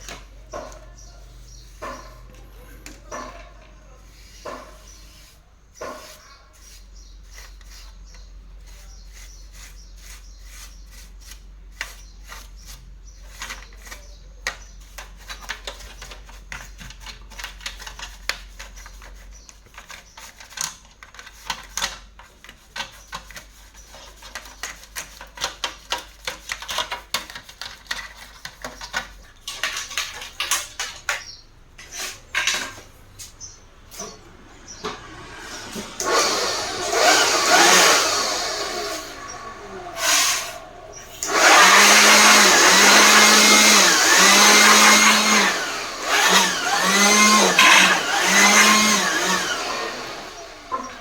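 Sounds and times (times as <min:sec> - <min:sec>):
plastic and metal parts clattering: 0:15.0 - 0:32.9, 0:35.9 - 0:51.0.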